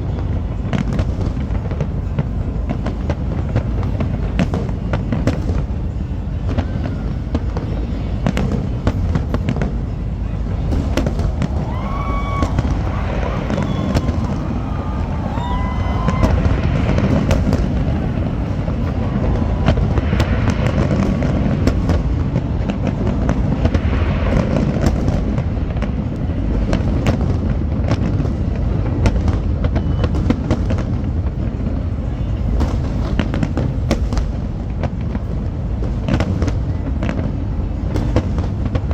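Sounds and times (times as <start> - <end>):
fireworks bangs and crackling: 0.0 - 38.9
deep rumble: 8.7 - 23.9.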